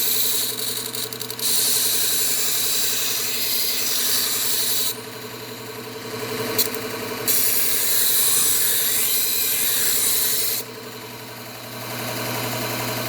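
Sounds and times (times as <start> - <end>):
knife grinding on belt sharpener: 0.0 - 5.0, 6.5 - 10.7
sharpener motor hum: 0.0 - 13.0.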